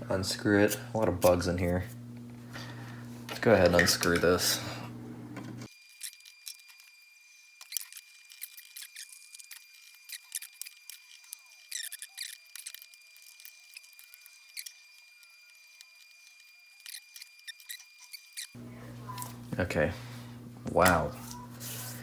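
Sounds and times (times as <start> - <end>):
screwdriver clicking and squeaking: 7.6 - 19.3.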